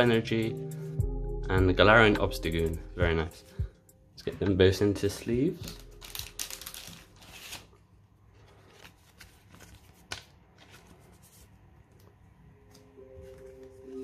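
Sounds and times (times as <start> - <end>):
cards rustling in plastic sleeves: 5.1 - 14.0.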